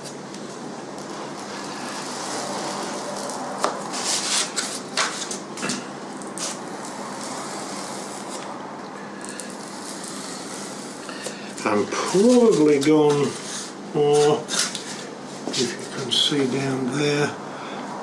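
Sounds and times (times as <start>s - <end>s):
steady background hiss: 0.0s - 18.0s
blade scoring foam: 1.0s - 16.8s.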